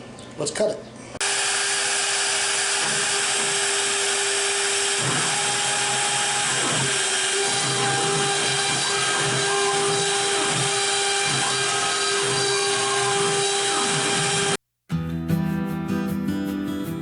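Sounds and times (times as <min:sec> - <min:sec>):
router spindle whine: 0:01.2 - 0:14.6.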